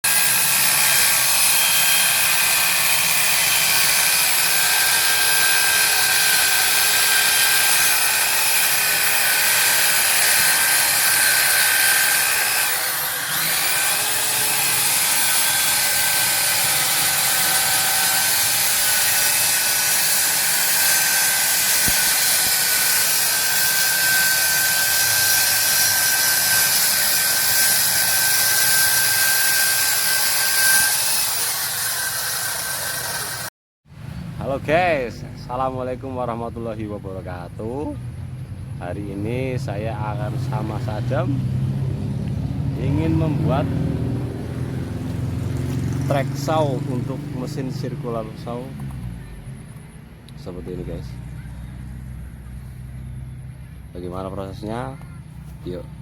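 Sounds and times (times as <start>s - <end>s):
circular saw motor whine: 0.1s - 33.5s, 42.2s - 49.8s.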